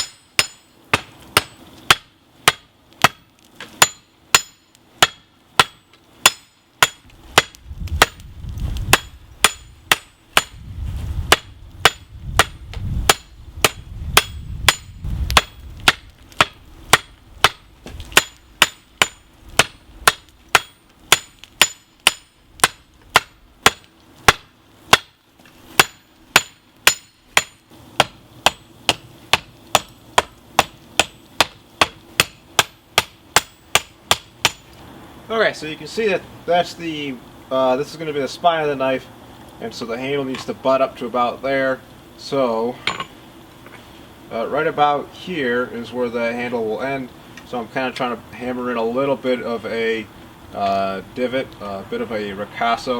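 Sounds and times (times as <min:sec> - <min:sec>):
low rumble: 0:10.5 - 0:18.1.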